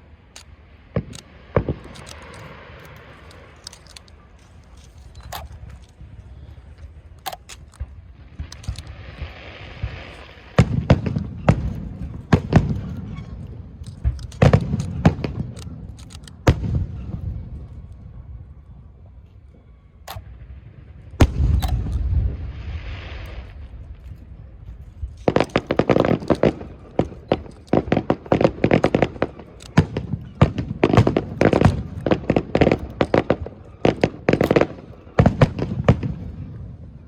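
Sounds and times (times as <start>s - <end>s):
fireworks booms echoing: 0.6s - 3.6s, 7.8s - 17.7s, 20.2s - 37.0s
fireworks bangs with crackling: 0.8s - 4.4s, 7.8s - 17.4s, 20.2s - 37.0s.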